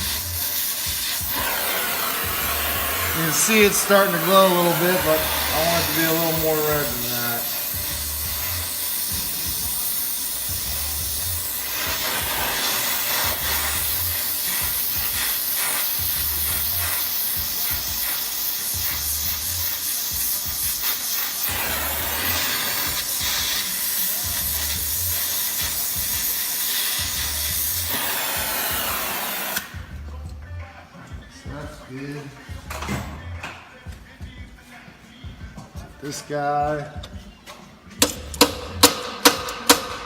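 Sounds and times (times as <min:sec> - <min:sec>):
torch flame hissing: 0:00.0 - 0:29.9.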